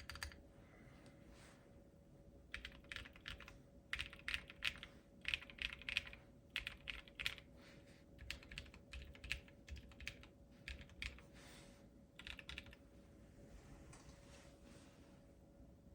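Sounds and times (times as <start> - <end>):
mechanical keyboard typing: 0.0 - 0.4, 2.5 - 7.5, 8.2 - 11.2, 12.2 - 12.8
faint steady hum: 0.0 - 15.9.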